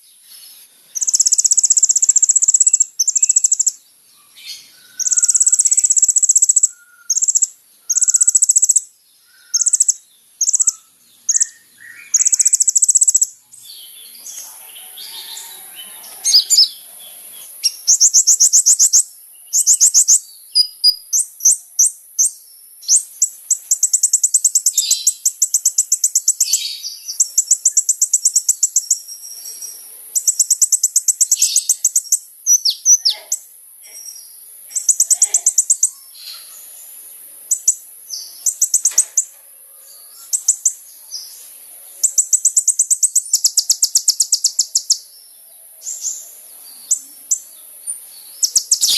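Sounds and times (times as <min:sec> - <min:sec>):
bird lower chirps: 0:00.0 - 0:48.9
bird high buzzy trills: 0:48.2 - 0:48.9.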